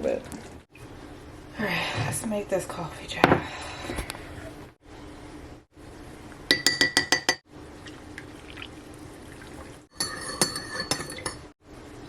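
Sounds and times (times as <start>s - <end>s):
spoon clinking against mug: 10.0s - 11.4s.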